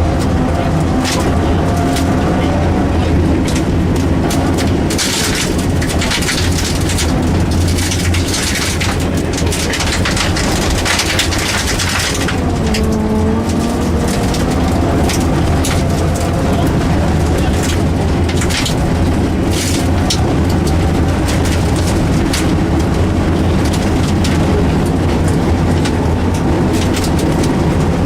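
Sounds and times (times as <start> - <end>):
rally car engine running hard: 0.0 - 28.0
stones rattling against car underside: 3.4 - 28.0.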